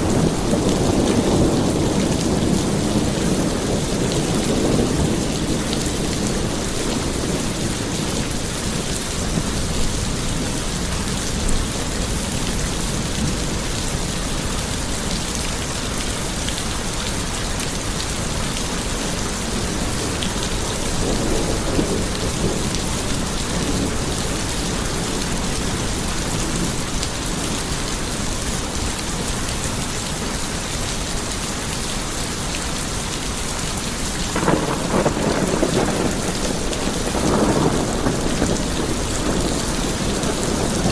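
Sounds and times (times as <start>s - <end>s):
thunder rumbling: 0.0s - 12.2s, 18.2s - 29.0s, 34.2s - 40.9s
heavy rain falling: 0.0s - 40.9s.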